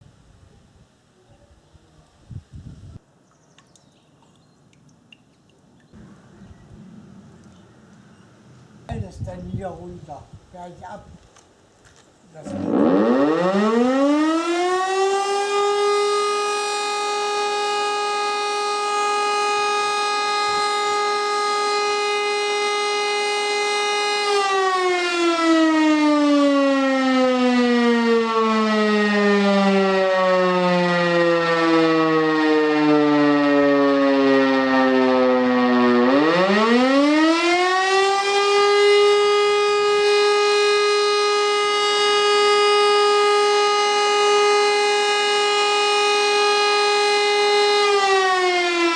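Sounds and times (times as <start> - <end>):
rotary siren wailing: 12.5 - 48.9.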